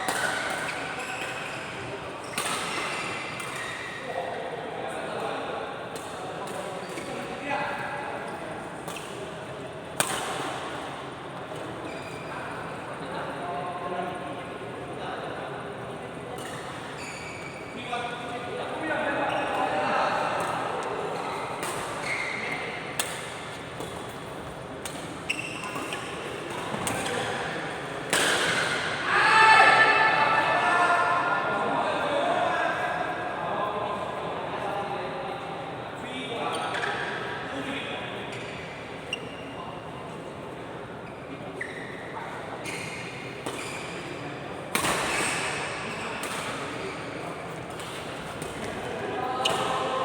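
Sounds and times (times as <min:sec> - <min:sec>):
short high squeak: 0:17.0 - 0:17.7.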